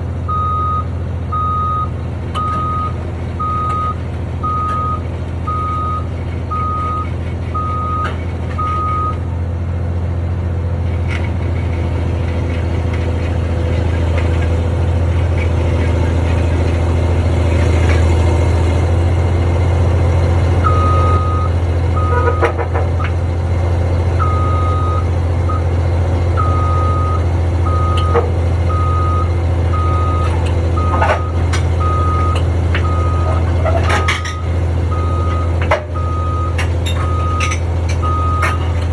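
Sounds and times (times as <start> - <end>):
heavy machine engine droning: 0.0 - 38.9
reversing alarm beeping: 0.3 - 9.2, 20.6 - 23.2, 24.1 - 38.7.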